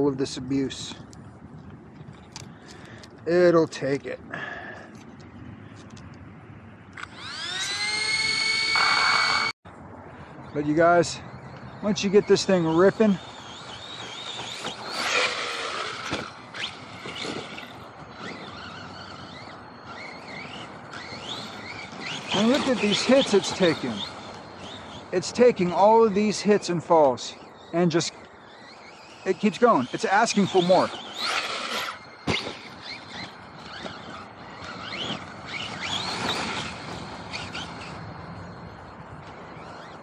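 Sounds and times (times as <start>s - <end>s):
gritty tyre noise: 0.0s - 40.0s
rc truck motor whine: 6.8s - 9.6s, 10.9s - 40.0s
knocks from landings: 13.8s - 18.7s, 31.0s - 37.9s.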